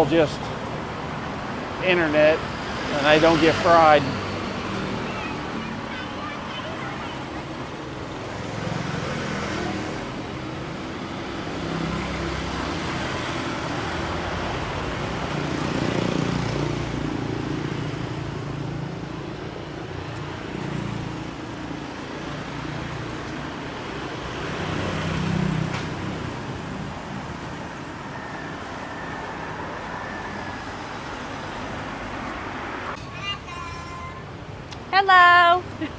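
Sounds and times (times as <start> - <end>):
passing vehicle engines: 0.0 - 35.9
road noise: 0.0 - 35.9.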